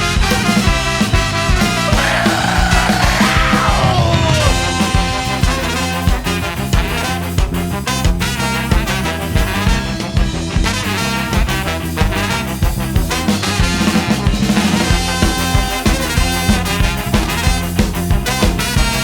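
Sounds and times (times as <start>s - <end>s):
live band playing ska-swing: 0.0s - 19.0s.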